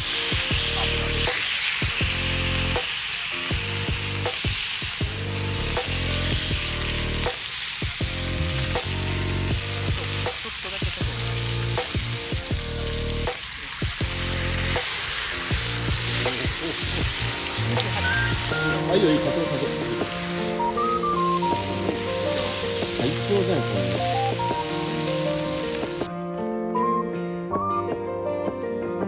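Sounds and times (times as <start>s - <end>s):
food sizzling in a pan: 0.0s - 26.1s
background music: 0.0s - 29.0s.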